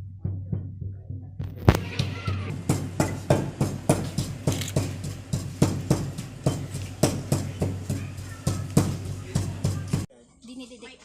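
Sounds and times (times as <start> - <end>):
rhythmic knocking: 0.1 - 10.1.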